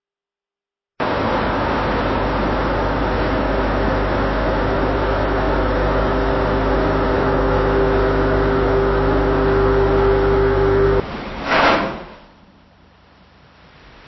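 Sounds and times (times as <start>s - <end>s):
machinery drone: 1.0s - 11.0s.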